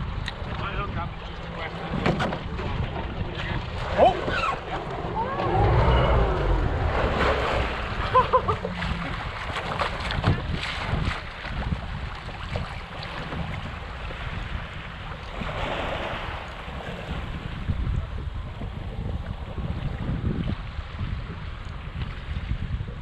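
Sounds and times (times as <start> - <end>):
water slapping against kayak: 0.0 - 23.0
wind buffeting microphone: 0.0 - 23.0
splashes: 1.2 - 17.4.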